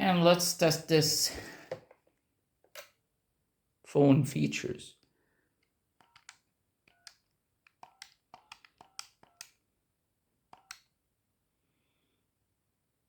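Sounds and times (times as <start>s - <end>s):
phone keypad button clicks: 7.8s - 9.5s.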